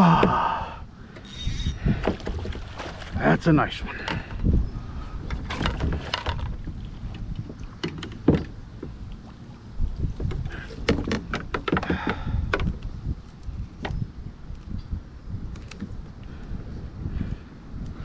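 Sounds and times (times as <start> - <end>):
knocks and clunks on a kayak: 0.0 - 3.3, 3.9 - 14.2
low handling rumble: 0.0 - 18.0.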